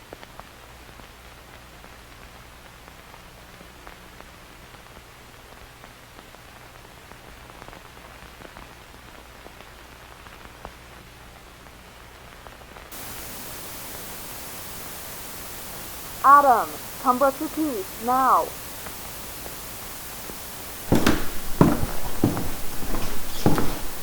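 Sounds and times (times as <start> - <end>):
steady tape hiss: 10.9 - 24.0
crackles and pops: 12.9 - 20.9
loud static hiss: 12.9 - 24.0
low mains hum: 12.9 - 24.0.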